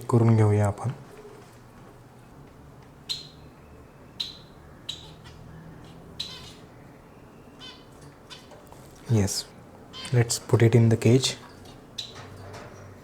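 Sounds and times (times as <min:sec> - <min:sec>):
cockatiels chirping: 0:03.1 - 0:03.4, 0:04.2 - 0:06.7, 0:07.5 - 0:08.5, 0:12.0 - 0:12.2.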